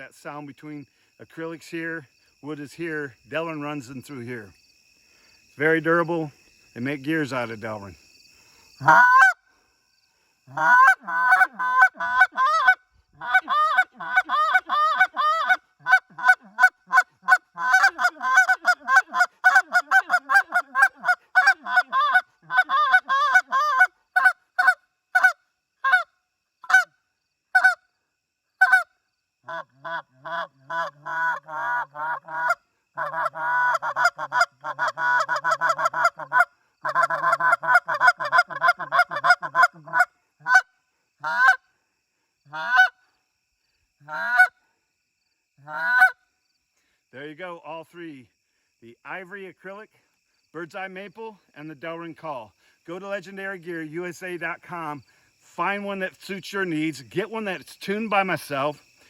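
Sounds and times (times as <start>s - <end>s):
goose call honks and clucks: 8.8s - 9.4s, 10.5s - 26.9s, 27.5s - 27.8s, 28.6s - 28.9s, 29.5s - 41.6s, 42.5s - 43.0s, 44.0s - 44.6s, 45.6s - 46.2s.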